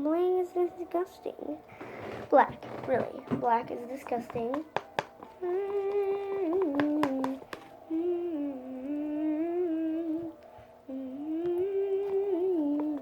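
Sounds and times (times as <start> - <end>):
girl humming: 5.4 - 13.0.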